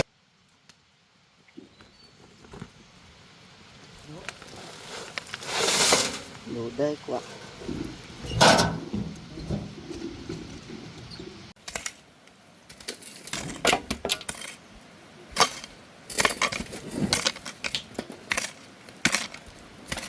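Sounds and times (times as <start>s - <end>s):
hoe chopping into soil: 15.3s - 20.0s.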